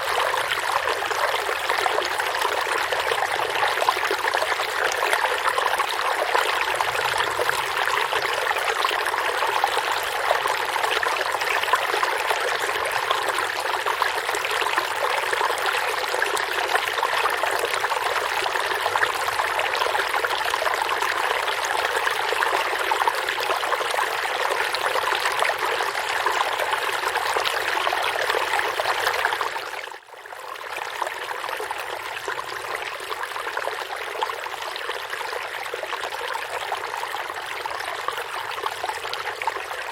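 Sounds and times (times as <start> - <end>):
stream water flowing: 0.0 - 39.9.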